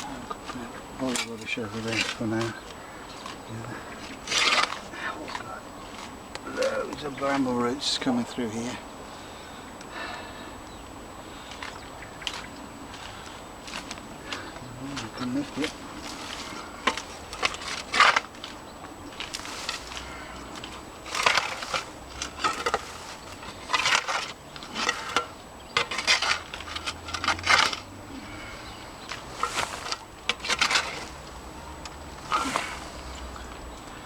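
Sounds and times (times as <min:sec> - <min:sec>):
digging and tearing in rooty soil: 0:00.0 - 0:07.6, 0:12.3 - 0:34.0.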